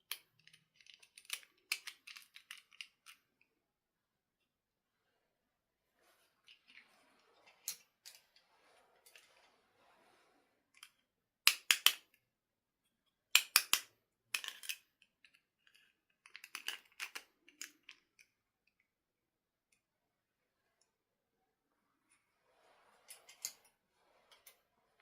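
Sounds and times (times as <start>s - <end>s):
small hard objects clicking: 0.0s - 3.2s, 13.4s - 18.3s.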